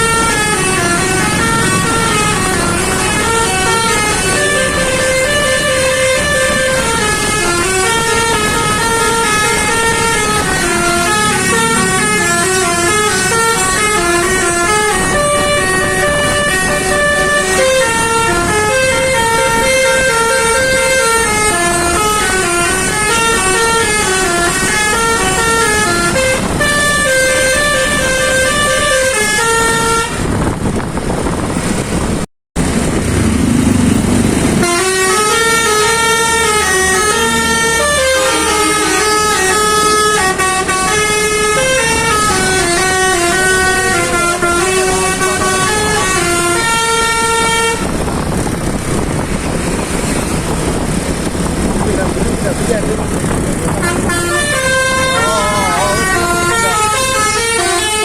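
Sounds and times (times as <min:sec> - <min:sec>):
bus horn playing melody: 0:00.0 - 0:30.8, 0:34.4 - 0:51.0, 0:53.6 - 0:58.0
rumbling noise: 0:47.2 - 0:57.4.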